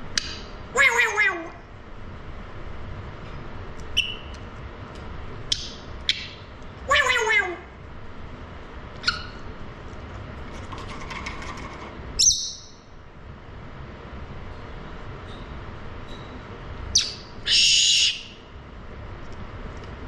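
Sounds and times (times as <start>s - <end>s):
parrot harsh squawk: 0.7s - 1.6s, 6.2s - 7.8s, 17.0s - 18.4s
parrot calls falling in pitch: 0.8s - 1.6s, 6.9s - 7.7s.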